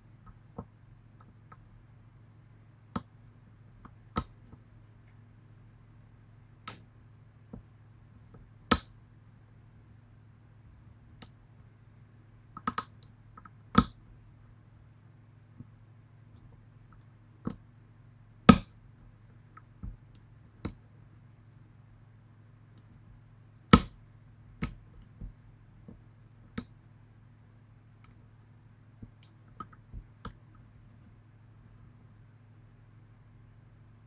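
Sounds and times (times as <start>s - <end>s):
faint low hum: 0.0s - 34.0s.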